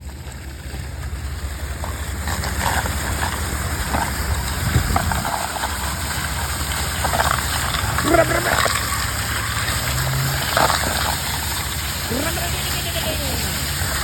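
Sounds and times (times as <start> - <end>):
water gushing from fire hydrant: 0.0 - 14.0.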